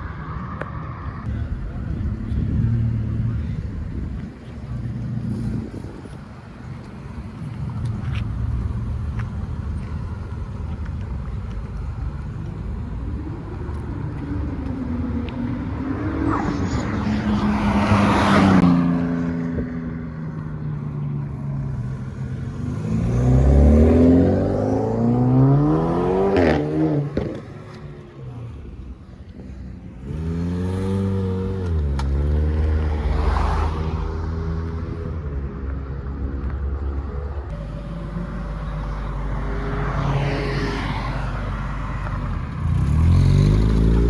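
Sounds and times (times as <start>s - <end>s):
car passing loudly: 14.6s - 20.2s, 21.1s - 35.2s, 37.5s - 44.0s
engine accelerating: 21.5s - 35.0s.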